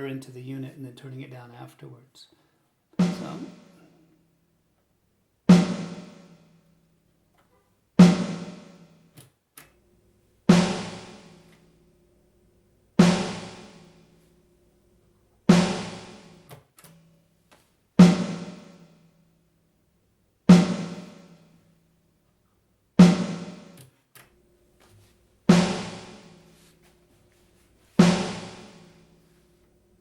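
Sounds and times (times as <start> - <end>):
snare drum hit with reverb: 3.0 - 3.9, 5.5 - 6.4, 8.0 - 8.8, 10.5 - 11.5, 13.0 - 13.8, 15.5 - 16.5, 18.0 - 18.8, 20.5 - 21.4, 23.0 - 23.8, 25.5 - 26.6, 28.0 - 29.0.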